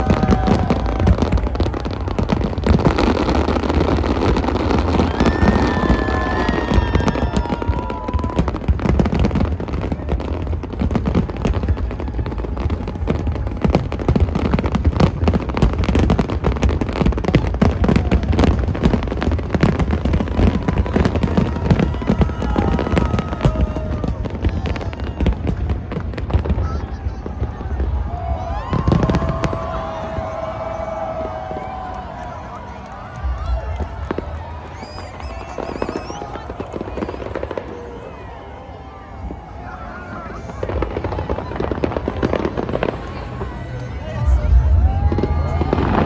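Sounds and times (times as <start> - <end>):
fireworks bangs and crackles: 0.0 - 46.0
fireworks whistling: 33.2 - 37.6.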